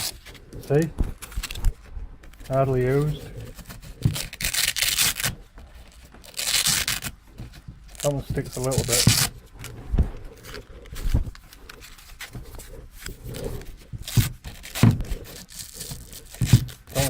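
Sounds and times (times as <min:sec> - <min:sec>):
hook-and-loop ripping: 0:02.4 - 0:07.2, 0:07.8 - 0:17.0
handling knocks: 0:12.2 - 0:15.4.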